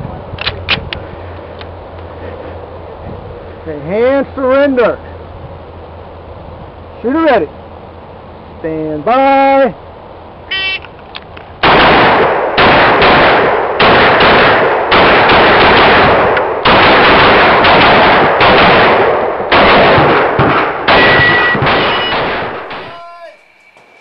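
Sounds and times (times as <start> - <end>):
pistol firing fast shots: 11.6 - 22.9.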